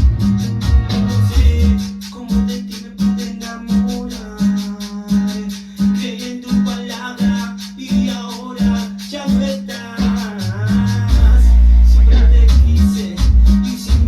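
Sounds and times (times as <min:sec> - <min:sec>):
pulsing bass note: 0:00.0 - 0:01.9, 0:10.5 - 0:14.0
plucked guitar melody: 0:00.0 - 0:05.3
shaker: 0:00.0 - 0:11.5, 0:12.2 - 0:14.0.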